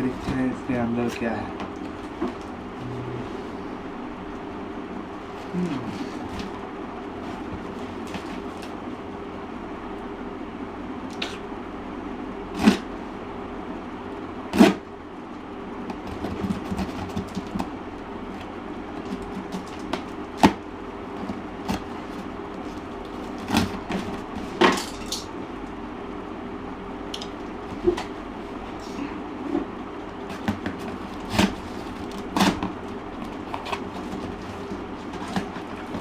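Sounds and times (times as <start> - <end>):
steady hum: 0.0 - 36.0
knocks and bumps of packaging: 30.3 - 36.0.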